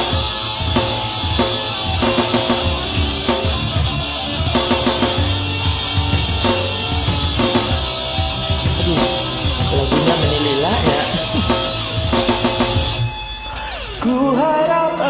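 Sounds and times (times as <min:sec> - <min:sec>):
steady drum beat: 0:00.0 - 0:13.5
bass line: 0:00.0 - 0:15.0.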